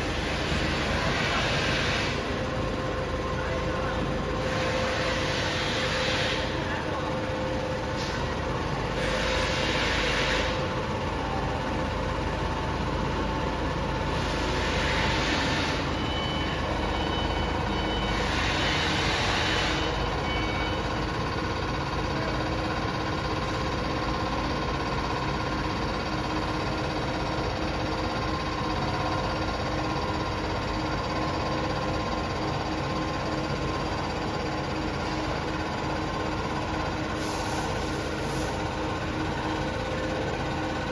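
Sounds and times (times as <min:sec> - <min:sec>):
loud hissing bursts: 0:37.2 - 0:38.6.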